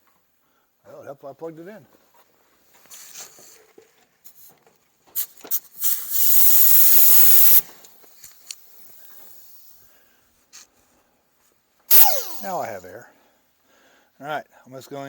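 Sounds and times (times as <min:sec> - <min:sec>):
compressed air hissing: 0:05.2 - 0:07.7, 0:08.3 - 0:09.9, 0:11.9 - 0:12.8
short clicks: 0:11.9 - 0:12.6.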